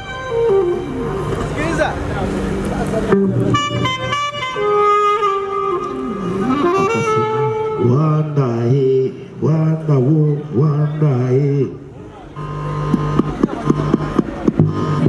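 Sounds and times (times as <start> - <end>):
live band melodic line: 0.0 - 8.0, 12.4 - 15.0
man singing: 7.0 - 11.9.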